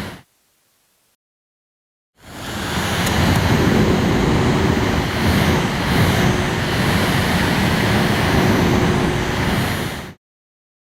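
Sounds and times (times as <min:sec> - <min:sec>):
rushing air noise: 0:02.3 - 0:10.2.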